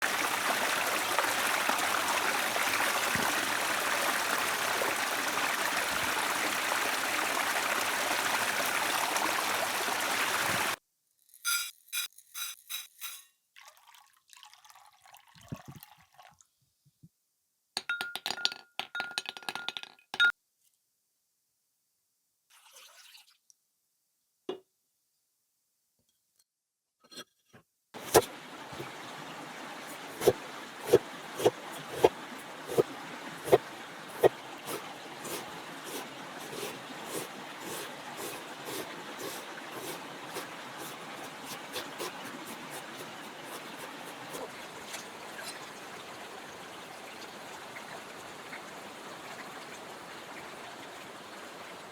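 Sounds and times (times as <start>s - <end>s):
river water running: 0.0s - 10.8s, 28.0s - 51.9s.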